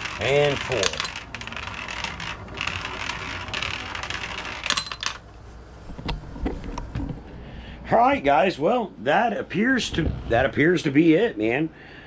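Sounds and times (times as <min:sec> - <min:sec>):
gumball rolling down spiral track: 0:00.0 - 0:05.3.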